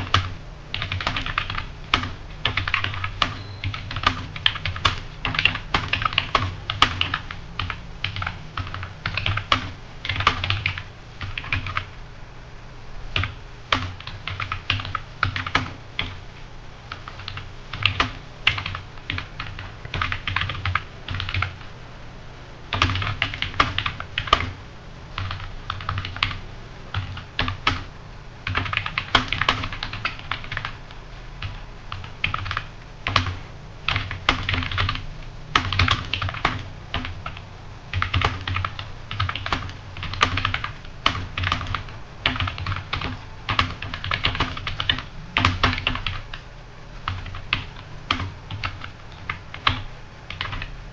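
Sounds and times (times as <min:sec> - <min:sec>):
fast keyboard typing: 0:00.0 - 0:12.0, 0:13.1 - 0:16.2, 0:16.9 - 0:21.7, 0:22.7 - 0:50.8.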